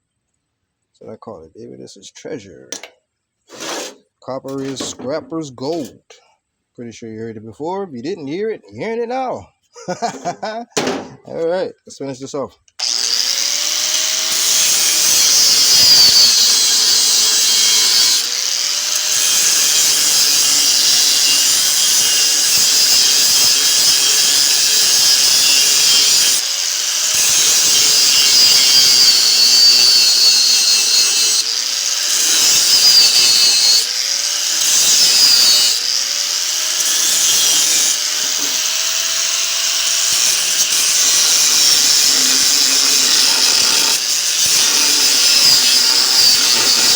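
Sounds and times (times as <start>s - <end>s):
angle grinder cutting steel: 3.5s - 6.0s, 12.8s - 46.9s
grinder wheel rattling against steel: 4.5s - 6.0s, 41.3s - 46.9s.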